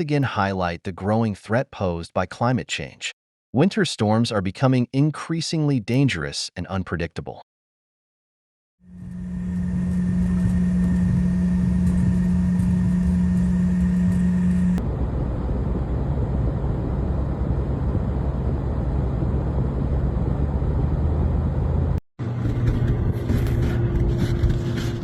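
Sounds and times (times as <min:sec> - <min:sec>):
motor vehicle running: 0:08.9 - 0:14.8, 0:16.9 - 0:25.0.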